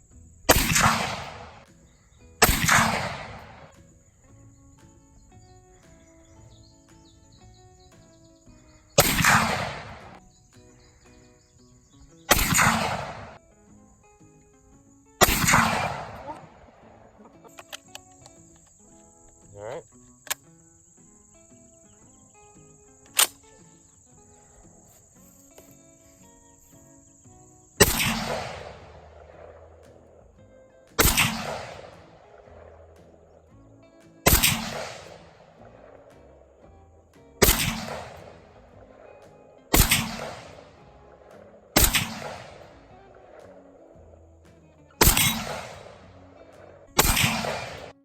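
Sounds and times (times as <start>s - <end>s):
sharp crack: 0.0s - 4.0s, 7.7s - 11.1s, 12.3s - 13.4s, 15.2s - 21.6s, 22.5s - 25.8s, 27.2s - 48.0s
background music: 0.0s - 48.0s
rifle shots with echo: 0.5s - 1.7s, 2.4s - 3.8s, 8.8s - 10.2s, 12.3s - 13.4s, 15.2s - 17.8s, 27.8s - 33.4s, 34.2s - 36.6s, 37.4s - 44.0s, 45.0s - 48.0s.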